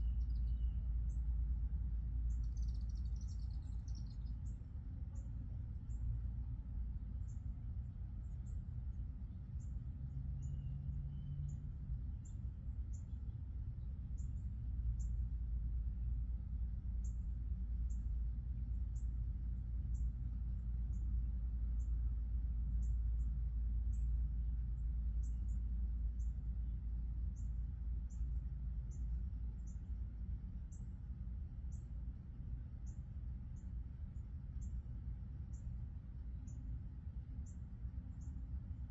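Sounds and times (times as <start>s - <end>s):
steady low rumble: 0.0s - 38.9s
small bird chirping: 2.3s - 4.6s.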